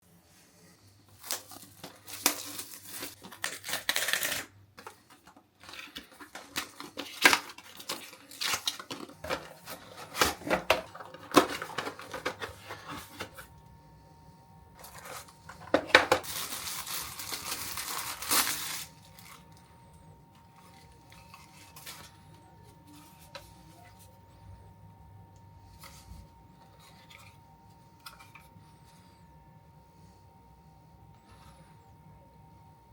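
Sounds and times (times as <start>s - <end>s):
cardboard and plastic tearing: 1.1s - 13.5s, 14.8s - 19.6s, 20.6s - 22.4s.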